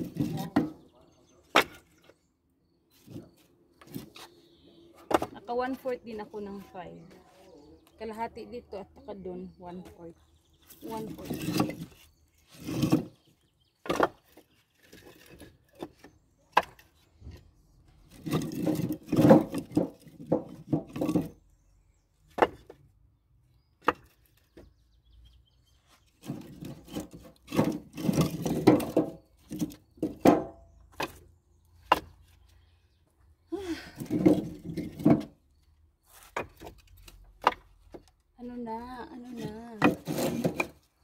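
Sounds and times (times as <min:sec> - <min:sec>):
firewood logs knocking together: 0:00.0 - 0:02.2, 0:05.0 - 0:06.1, 0:10.6 - 0:17.4, 0:18.0 - 0:21.5, 0:22.2 - 0:23.0, 0:23.8 - 0:24.9, 0:26.0 - 0:32.5, 0:33.5 - 0:35.5, 0:36.2 - 0:38.3, 0:39.2 - 0:41.0.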